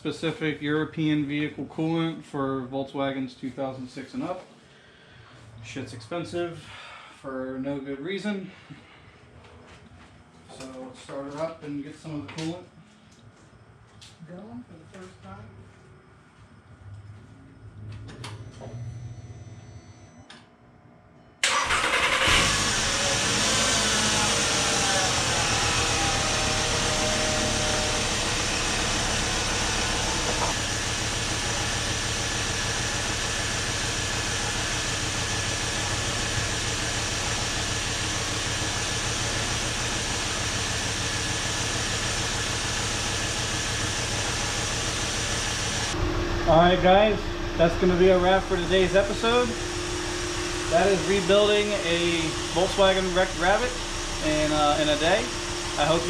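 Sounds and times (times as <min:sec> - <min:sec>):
car engine starting and idling: 0:21.4 - 0:56.0.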